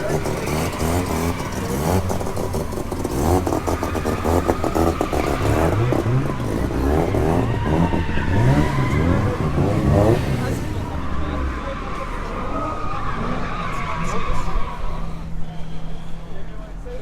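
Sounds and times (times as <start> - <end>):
tyre squeal: 0.0 - 16.2
car engine revving: 0.0 - 16.3.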